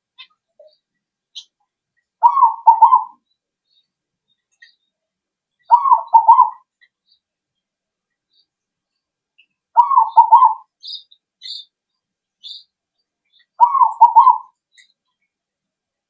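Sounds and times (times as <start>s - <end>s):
dove cooing: 2.2s - 3.2s, 5.7s - 6.6s, 9.8s - 10.7s, 13.6s - 14.5s
faint high chirps: 8.3s - 11.8s.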